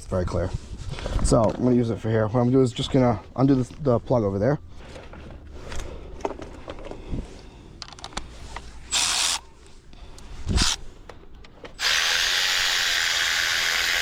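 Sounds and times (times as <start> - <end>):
small clicks and handling noises: 7.8 - 8.7.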